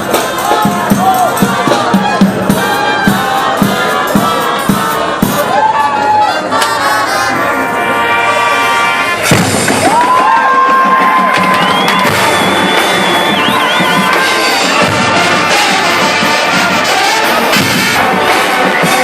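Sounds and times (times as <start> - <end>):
drum strokes: 0.0 - 5.6, 9.2 - 19.0
brass bugles sounding: 0.3 - 19.0.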